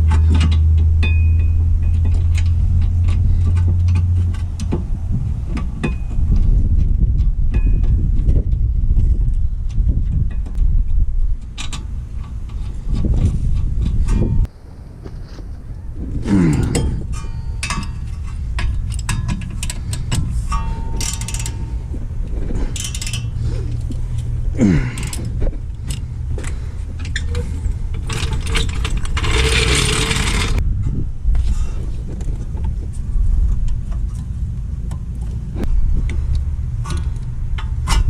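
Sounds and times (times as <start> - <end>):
metal tools clinking and scraping: 0.0 - 4.7, 16.3 - 30.6
low steady rumble: 0.0 - 38.0.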